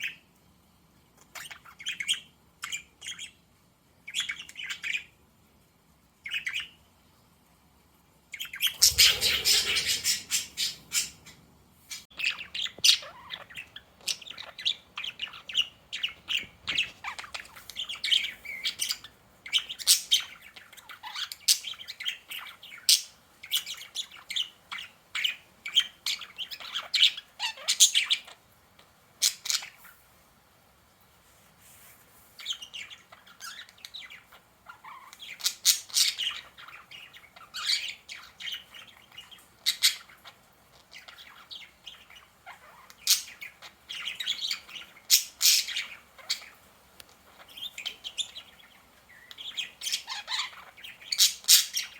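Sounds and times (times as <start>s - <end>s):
budgerigars chirping and chattering: 8.4s - 28.4s, 32.4s - 51.9s.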